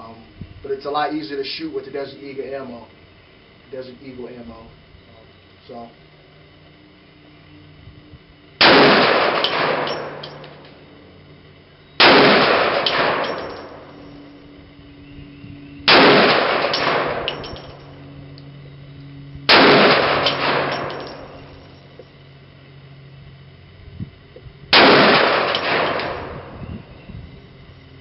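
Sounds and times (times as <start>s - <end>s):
pistol shots echoing: 8.6s - 10.4s, 12.0s - 13.8s, 15.9s - 17.5s, 19.5s - 21.4s, 24.8s - 26.5s
small metallic clinks: 9.4s - 10.7s, 12.8s - 14.4s, 16.6s - 19.1s, 20.1s - 22.2s.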